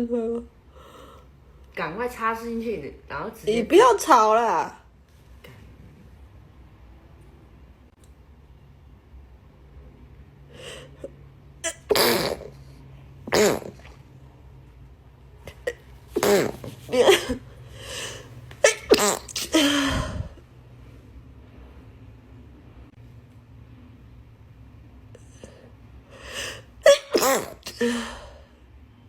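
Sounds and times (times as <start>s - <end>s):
person sneezing: 11.6s - 12.6s, 13.3s - 14.0s, 15.6s - 17.4s, 18.0s - 20.4s, 26.4s - 28.3s.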